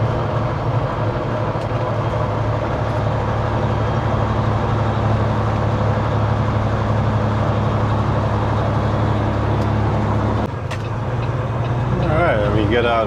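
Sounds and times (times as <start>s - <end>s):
diesel truck engine running: 0.0s - 13.0s.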